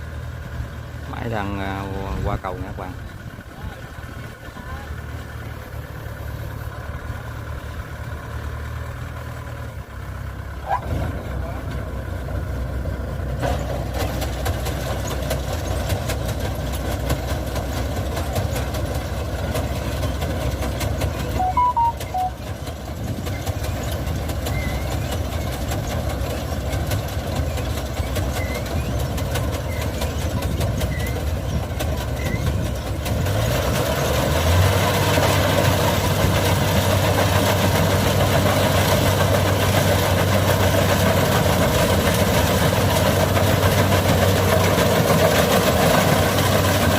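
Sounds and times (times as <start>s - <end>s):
combine harvester diesel engine: 0.0s - 46.9s.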